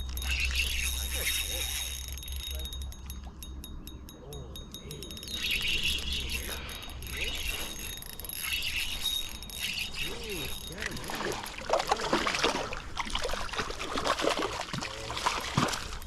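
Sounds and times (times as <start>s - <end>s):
fishing reel clicking: 0.0s - 3.3s, 4.6s - 12.0s.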